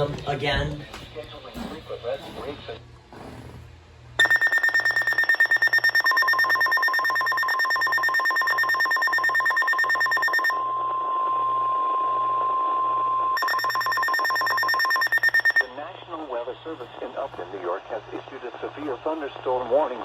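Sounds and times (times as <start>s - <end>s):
rapid electronic beeping: 4.2s - 10.6s, 13.4s - 15.7s
steady warning tone: 4.2s - 15.7s.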